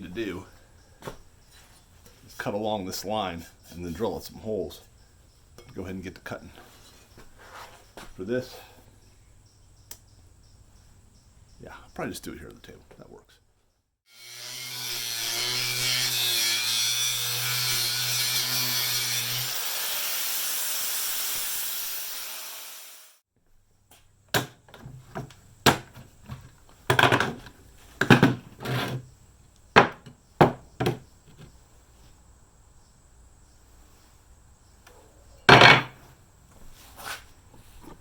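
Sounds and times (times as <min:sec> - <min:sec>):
power tool cutting metal: 0:14.1 - 0:23.2
sharp knocks and clanks: 0:24.3 - 0:29.0, 0:29.8 - 0:31.5, 0:35.5 - 0:36.0.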